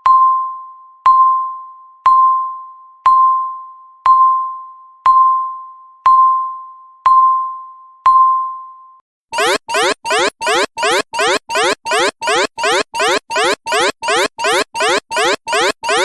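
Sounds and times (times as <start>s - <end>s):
bell-like timer chime: 9.4s - 16.0s.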